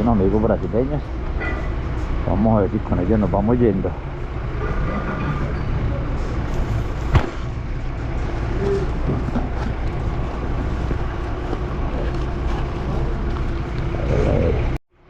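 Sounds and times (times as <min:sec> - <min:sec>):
road noise: 0:00.0 - 0:15.0.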